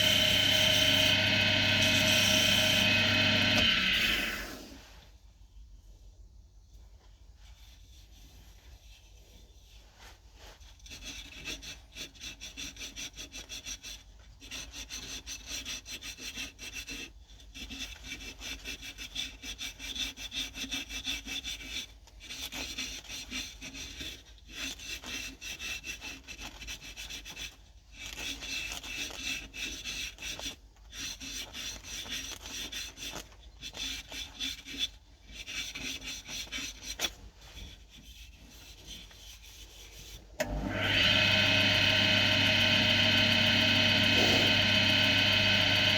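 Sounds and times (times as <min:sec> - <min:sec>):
rasping wood by hand: 0:00.0 - 0:04.6, 0:10.6 - 0:41.8, 0:42.6 - 0:45.9.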